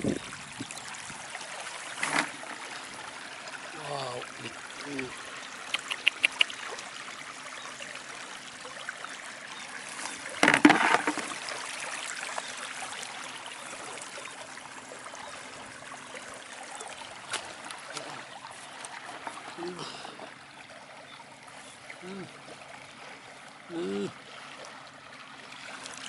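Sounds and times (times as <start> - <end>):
shallow water trickling: 0.0 - 26.0
sharp clicks: 5.7 - 6.5.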